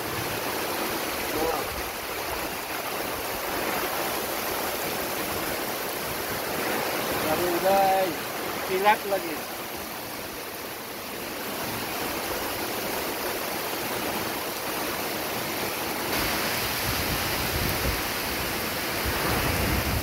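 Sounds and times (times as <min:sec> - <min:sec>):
heavy rain: 0:00.0 - 0:20.0
strong wind: 0:09.5 - 0:20.0
gusty low rumbles: 0:16.2 - 0:18.4.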